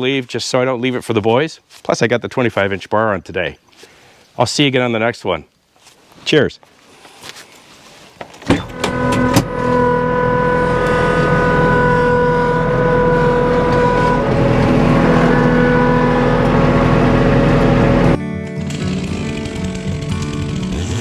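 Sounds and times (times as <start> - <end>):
chainsaw starting and running: 8.5 - 21.0.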